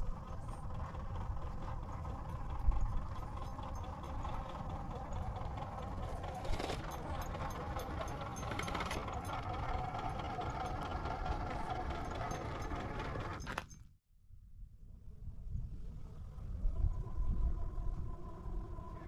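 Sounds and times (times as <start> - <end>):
rattling clicks: 5.2 - 13.8.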